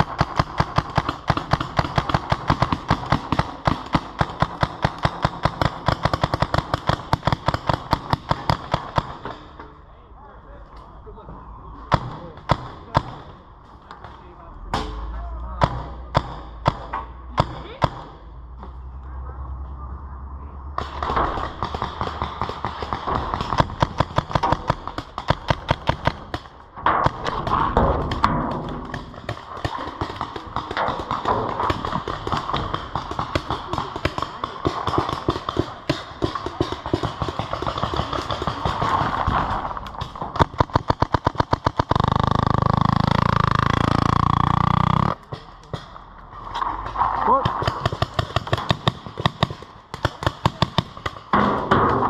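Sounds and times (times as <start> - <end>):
paintball markers firing: 21.0 - 46.0, 47.4 - 51.4.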